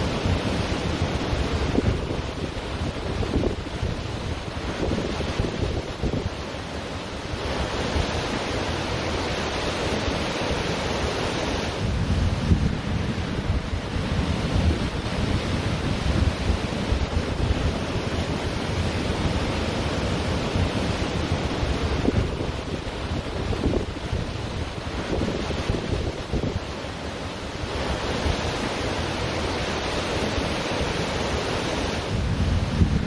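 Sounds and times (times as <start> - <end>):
wind buffeting microphone: 0.0 - 6.4, 11.6 - 26.8, 31.7 - 33.0
ocean surf on beach: 0.0 - 33.0.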